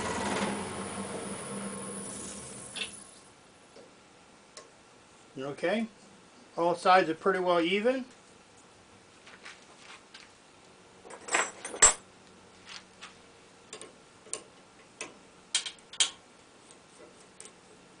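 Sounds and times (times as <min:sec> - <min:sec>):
faint steady hum: 0:00.0 - 0:18.0
clicks and knocks of tools handled: 0:12.7 - 0:17.6.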